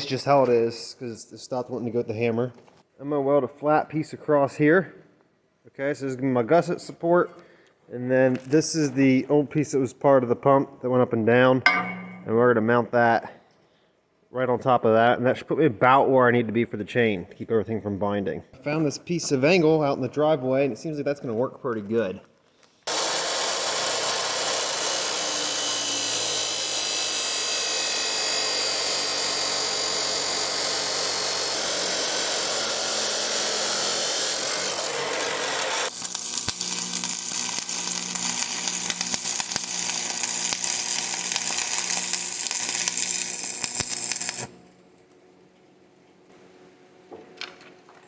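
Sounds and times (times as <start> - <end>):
angle grinder on steel: 22.9 - 44.6
welder crackle: 33.2 - 45.1.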